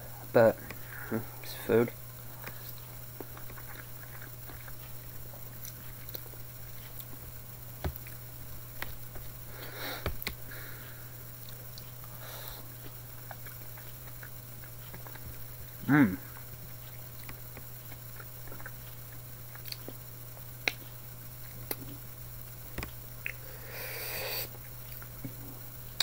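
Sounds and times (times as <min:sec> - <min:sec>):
soft breaths: 0:00.0 - 0:01.7, 0:09.4 - 0:11.3, 0:12.0 - 0:13.0, 0:23.4 - 0:24.6
low electrical hum: 0:00.0 - 0:26.0
quiet chewing: 0:00.6 - 0:23.6, 0:24.3 - 0:26.0.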